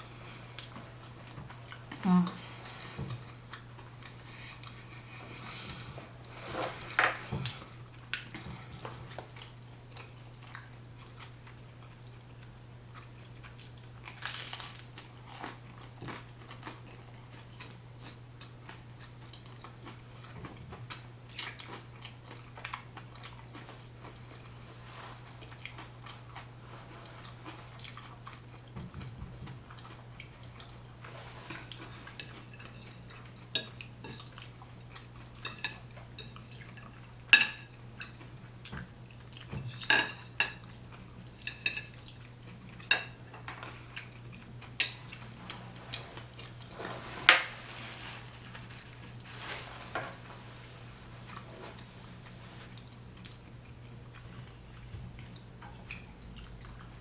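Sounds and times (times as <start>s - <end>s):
person chewing crunchy food: 7.4s - 30.9s.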